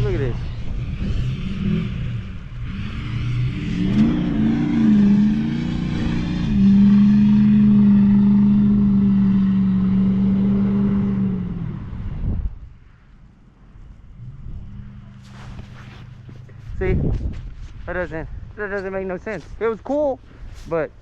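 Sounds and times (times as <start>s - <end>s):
car engine revving hard: 0.8s - 11.9s.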